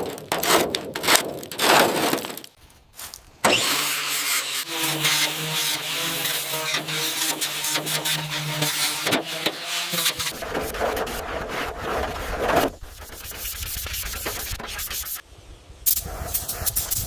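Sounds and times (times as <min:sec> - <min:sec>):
abrasive rubbing and scraping: 0:00.0 - 0:02.6, 0:03.7 - 0:15.2.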